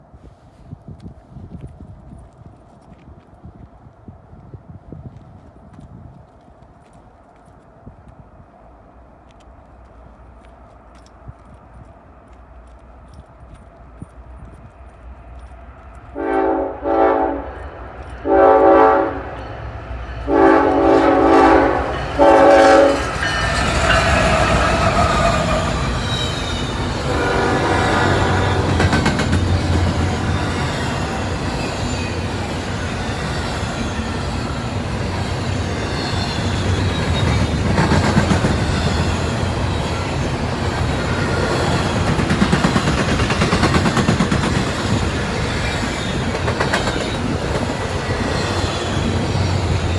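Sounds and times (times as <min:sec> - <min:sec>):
train wheels on rail: 0:00.1 - 0:49.9
locomotive air horn blasts: 0:16.2 - 0:26.0, 0:27.0 - 0:28.9.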